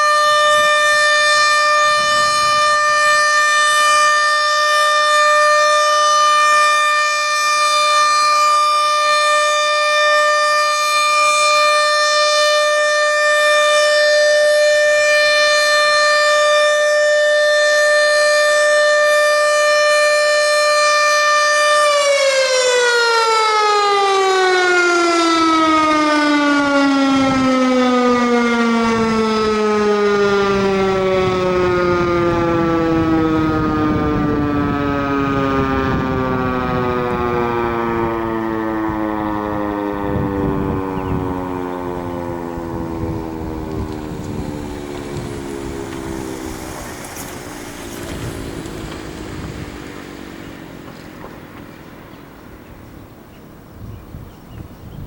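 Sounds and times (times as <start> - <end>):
tornado siren: 0.0 - 55.0.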